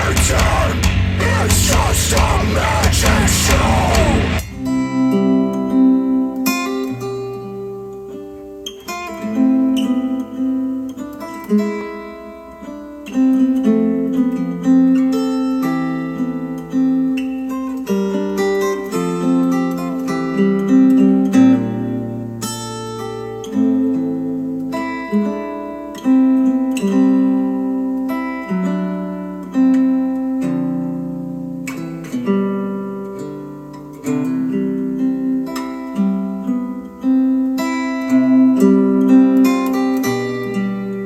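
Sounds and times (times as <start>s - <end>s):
acoustic guitar music: 0.0s - 41.0s.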